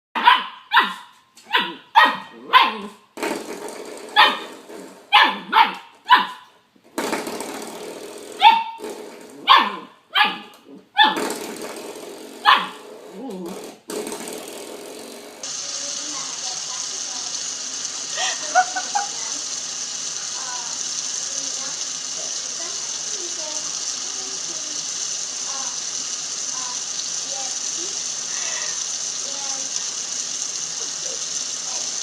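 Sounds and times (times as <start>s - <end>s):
dog barking: 0.2s - 3.0s, 4.2s - 4.5s, 5.1s - 6.5s, 8.4s - 8.8s, 9.4s - 11.2s, 12.4s - 12.8s.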